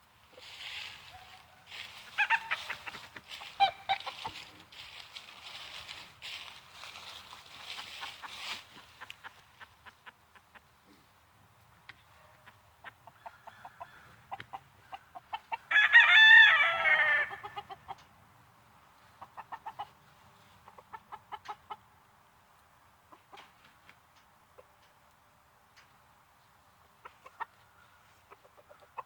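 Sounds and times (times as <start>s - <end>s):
chickens clucking: 0.3s - 11.2s, 11.9s - 15.7s, 17.2s - 18.2s, 18.8s - 29.0s
rooster crowing: 13.2s - 14.2s, 15.6s - 17.6s.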